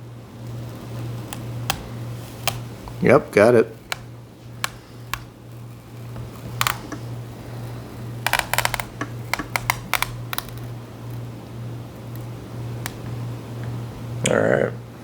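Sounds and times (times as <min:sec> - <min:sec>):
steady low hum: 0:00.0 - 0:15.0
screwdriver clicks and taps: 0:00.7 - 0:03.0, 0:03.8 - 0:07.0, 0:08.2 - 0:10.7.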